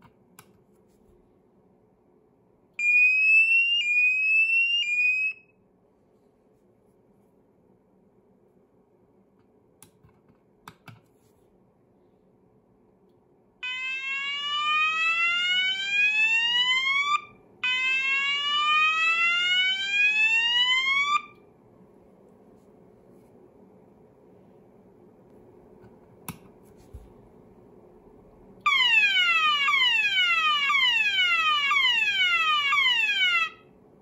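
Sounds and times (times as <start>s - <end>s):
fire alarm rising sweeps: 2.8s - 5.5s, 13.6s - 21.4s, 28.7s - 33.6s.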